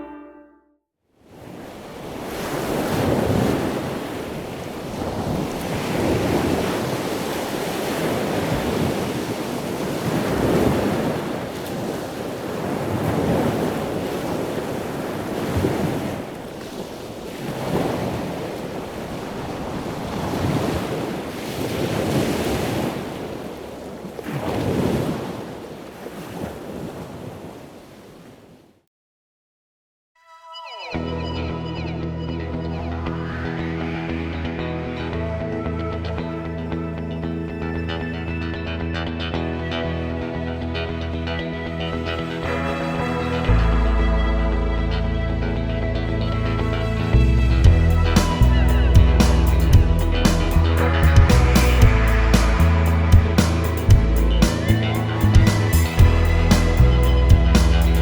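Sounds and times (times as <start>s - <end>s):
waves breaking: 1.2s - 28.7s, 39.6s - 58.0s.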